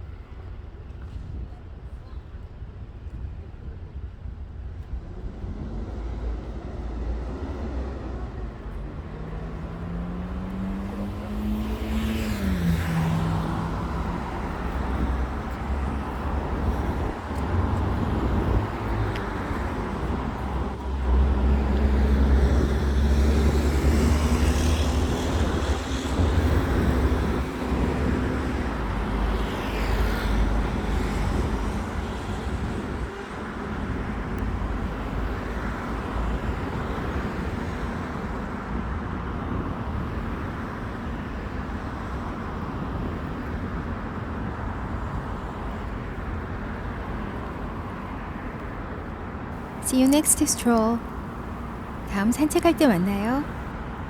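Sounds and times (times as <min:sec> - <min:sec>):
road traffic passing: 0:05.0 - 0:54.0
car engine pulling away: 0:05.1 - 0:14.3.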